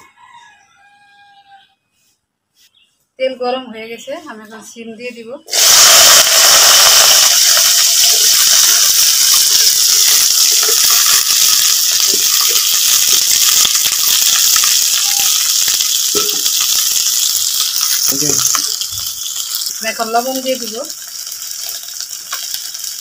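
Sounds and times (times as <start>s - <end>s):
beans sizzling in hot oil: 5.5s - 23.0s.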